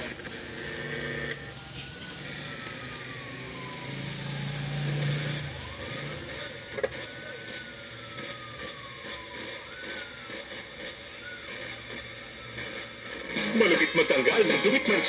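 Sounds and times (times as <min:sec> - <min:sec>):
radio static and hum: 0:11.5 - 0:15.0.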